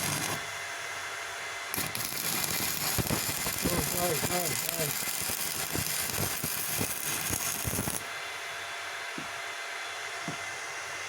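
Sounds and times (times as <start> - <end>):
welding arc crackling: 0.0 - 0.5, 1.7 - 8.1
cooling fan humming: 0.0 - 11.0.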